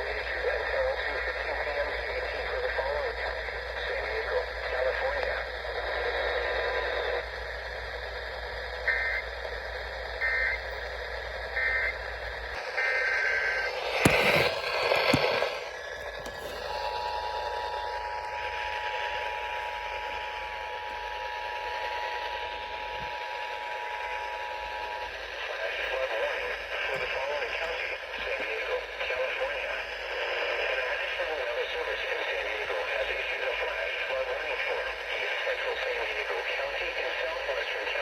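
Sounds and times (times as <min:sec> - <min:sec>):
radio hiss: 0:00.0 - 0:38.0
radio crackle: 0:12.4 - 0:20.2.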